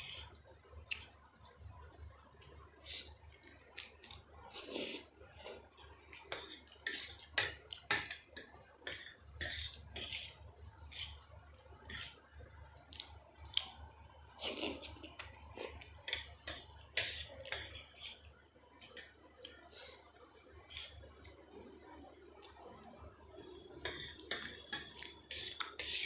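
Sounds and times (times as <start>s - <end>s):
faint low hum: 0.0s - 26.0s
wet mouth eating sounds: 2.9s - 5.1s, 12.7s - 16.4s.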